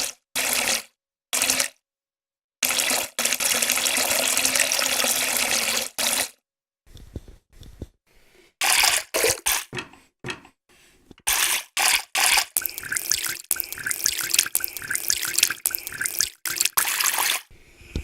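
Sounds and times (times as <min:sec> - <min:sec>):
water dripping and splashing: 0:12.2 - 0:17.5.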